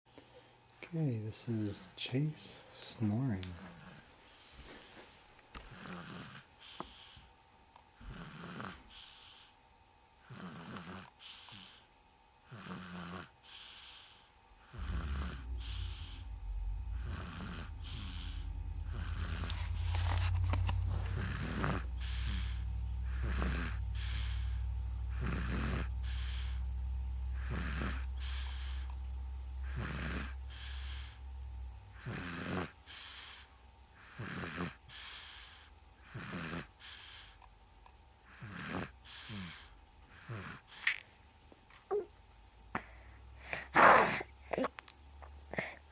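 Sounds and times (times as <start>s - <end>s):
person snoring: 5.7s - 6.5s, 10.3s - 11.8s, 12.5s - 20.1s, 21.0s - 26.7s, 27.3s - 28.9s, 29.6s - 31.2s, 31.9s - 36.7s, 38.3s - 40.7s
low steady rumble: 13.4s - 45.9s.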